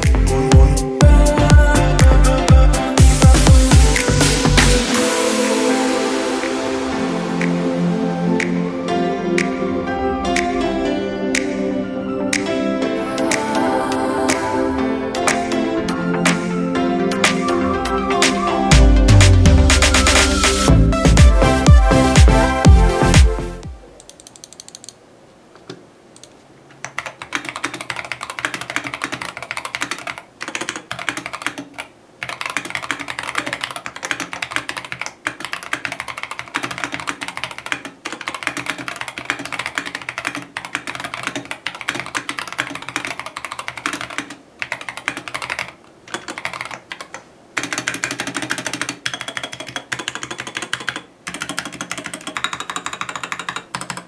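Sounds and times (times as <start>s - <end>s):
typing on mechanical keyboard: 24.0s - 25.0s, 26.2s - 54.0s.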